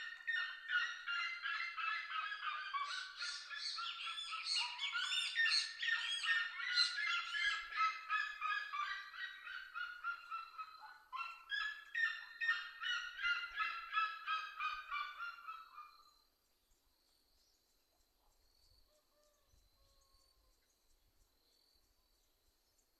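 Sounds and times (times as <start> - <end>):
bird yelping song: 0.0 - 16.2
faint insect trill: 16.0 - 22.9.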